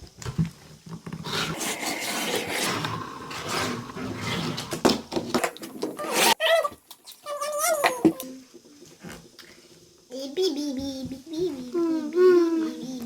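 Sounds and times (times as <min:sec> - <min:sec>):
hands scraping toy packaging: 0:01.2 - 0:06.4.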